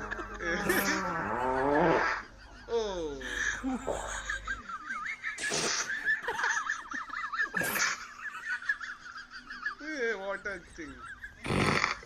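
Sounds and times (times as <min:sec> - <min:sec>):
low buzzy fart: 0:00.0 - 0:02.3, 0:11.4 - 0:12.0
squeaky fart noises: 0:00.5 - 0:02.2, 0:11.4 - 0:12.0.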